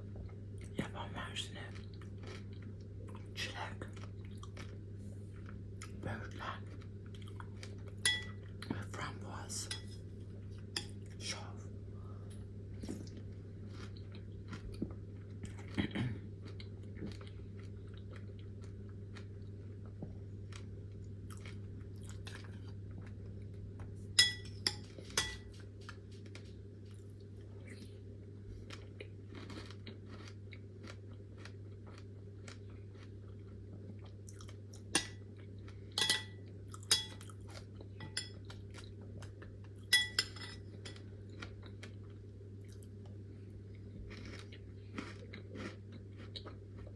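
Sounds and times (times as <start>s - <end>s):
chewing and crunching: 0.2s - 11.5s, 12.2s - 46.9s
utensil clinking on dishware: 8.1s - 8.4s, 24.2s - 25.5s, 36.0s - 37.2s, 38.0s - 38.4s, 39.9s - 41.0s.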